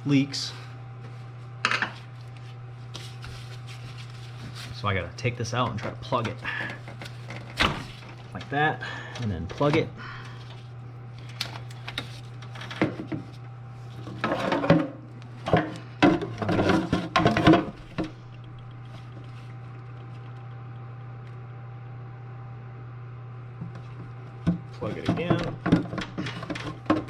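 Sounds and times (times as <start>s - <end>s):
steady low hum: 0.0s - 27.0s
hose knocking and scraping: 15.5s - 18.2s, 23.6s - 27.0s.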